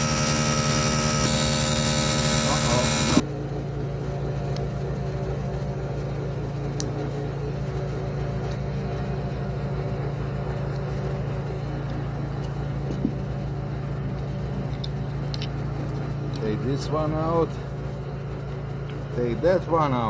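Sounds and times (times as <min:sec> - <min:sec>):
mechanical hum with low throb: 0:00.0 - 0:20.0.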